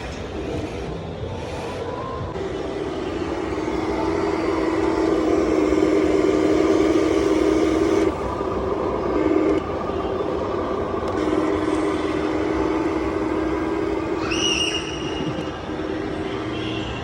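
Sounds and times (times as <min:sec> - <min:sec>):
machine hum over rumble: 0:00.0 - 0:16.6.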